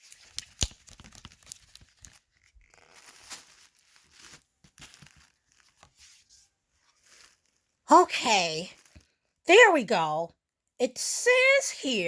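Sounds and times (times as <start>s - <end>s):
small clicks of book handling: 0.0s - 6.2s
paper rustling: 0.0s - 7.7s.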